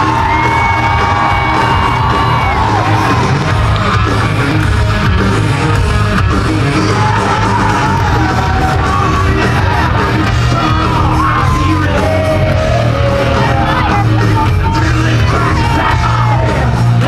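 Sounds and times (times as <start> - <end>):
people yelling: 0.0 - 4.6, 6.7 - 17.0
loud music with heavy bass: 0.0 - 17.0
person singing: 6.3 - 17.0.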